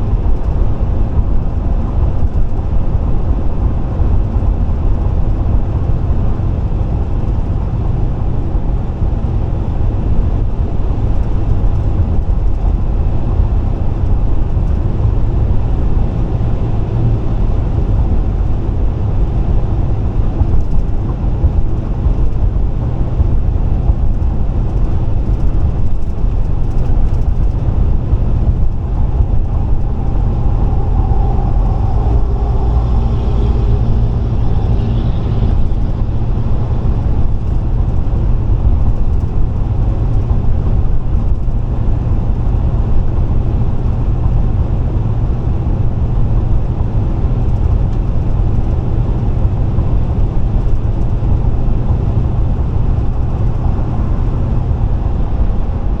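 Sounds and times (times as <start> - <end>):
car road noise rumble: 0.0 - 56.0.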